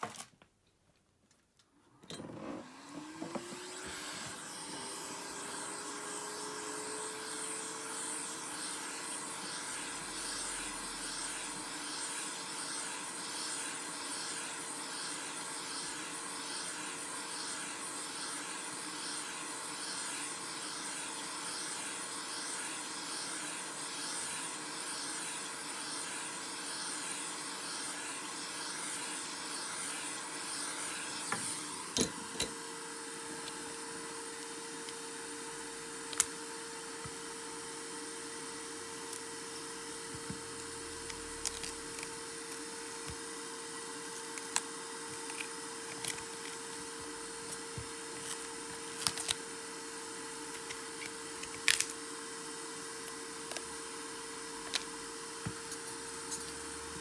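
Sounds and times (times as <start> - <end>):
hot air gun running: 3.0 - 32.5, 39.7 - 43.2.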